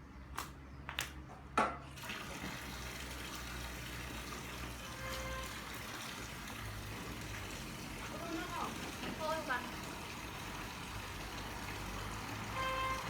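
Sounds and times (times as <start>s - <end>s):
water running: 2.0s - 13.0s.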